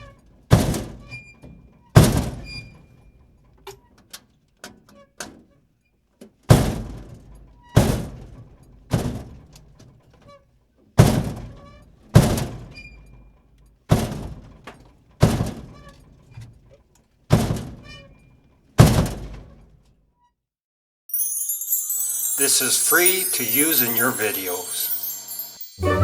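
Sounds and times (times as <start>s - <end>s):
dumpster door slamming: 0.5s - 1.2s, 2.0s - 2.8s, 6.5s - 9.5s, 11.0s - 13.2s, 13.9s - 14.6s, 15.2s - 15.8s, 17.3s - 17.9s, 18.8s - 19.6s.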